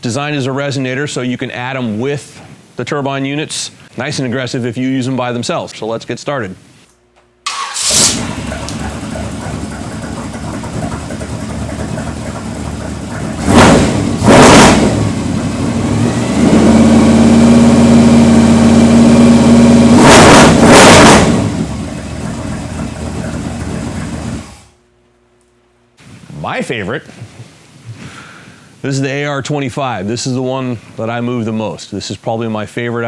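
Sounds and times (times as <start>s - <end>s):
engine exhaust idling and revving: 7.8s - 24.8s.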